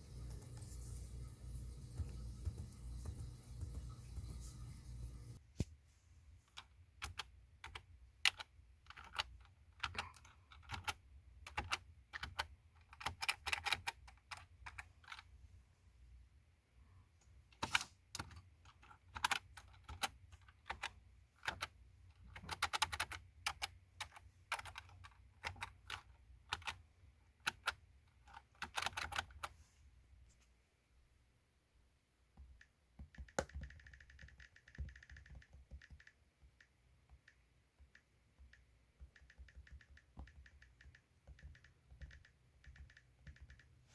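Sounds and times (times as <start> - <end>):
keyboard keys clicking: 1.8 - 5.0, 6.6 - 15.2, 17.6 - 29.5, 33.0 - 43.8.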